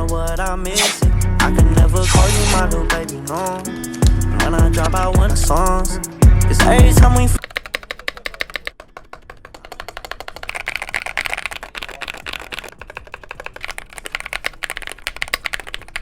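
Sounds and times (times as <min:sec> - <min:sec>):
fast typing on mechanical keyboard: 0:07.4 - 0:16.0.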